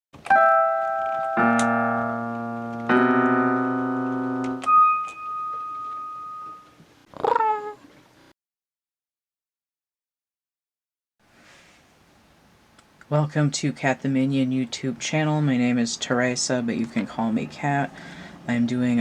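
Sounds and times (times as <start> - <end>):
piano jingle: 0.2 - 6.8.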